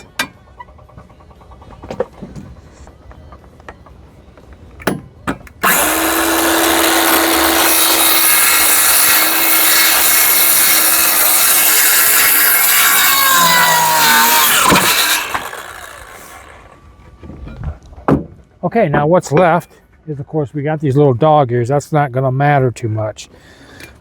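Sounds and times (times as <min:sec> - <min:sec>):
circular saw cutting board: 0:05.6 - 0:16.8.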